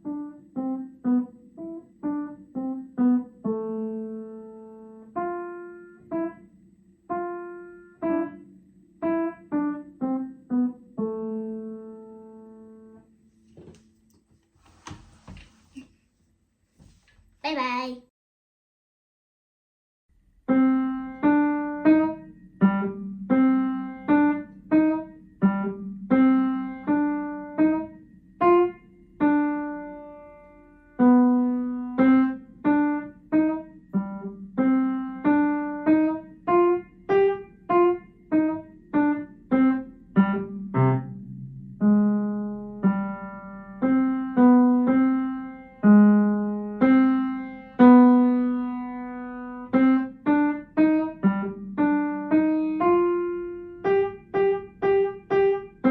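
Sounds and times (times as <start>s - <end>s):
piano melody: 0.0s - 13.2s, 20.5s - 55.9s.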